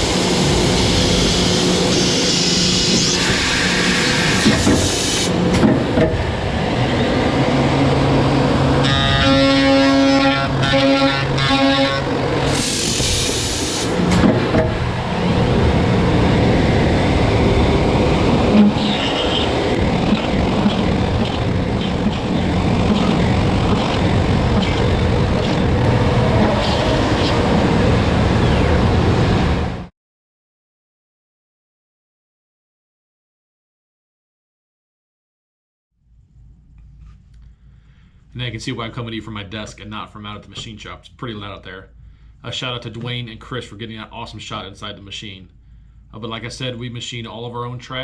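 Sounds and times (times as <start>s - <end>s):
horn-like machine whine: 0.0s - 5.4s, 6.8s - 14.0s, 16.4s - 29.8s
machine cutting metal: 0.0s - 14.8s, 17.0s - 28.6s.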